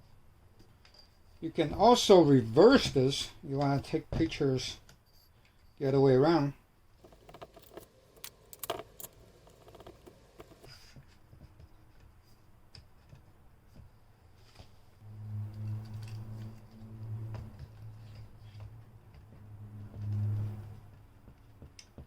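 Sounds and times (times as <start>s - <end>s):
tripod clicks and rattling: 7.0s - 10.7s
low steady hum: 7.0s - 10.8s.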